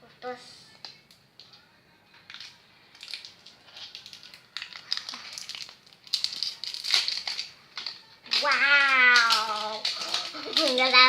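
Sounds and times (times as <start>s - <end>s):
plastic wrapping crinkling and tearing: 2.2s - 11.0s.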